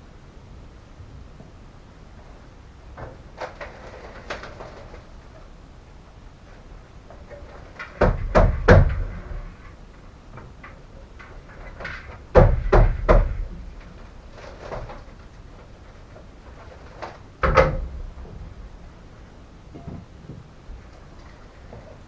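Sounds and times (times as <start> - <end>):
quiet handling noise: 1.0 - 22.0
sharp knocks on car metal: 7.9 - 9.4, 12.3 - 13.6, 17.4 - 18.0.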